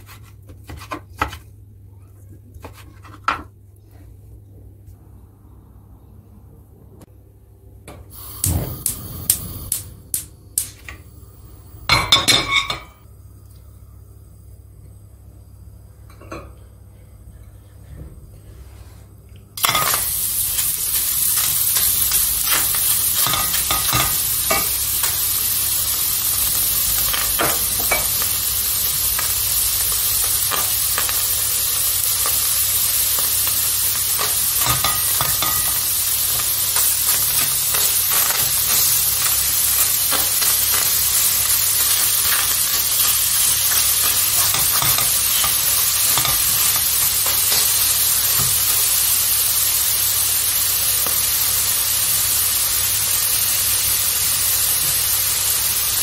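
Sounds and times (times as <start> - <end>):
food sizzling in oiled pan: 8.1 - 13.0, 19.6 - 56.0.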